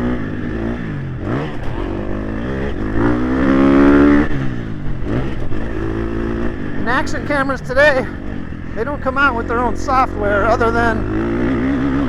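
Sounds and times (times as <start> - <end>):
motocross bike engine revving: 0.0 - 12.0.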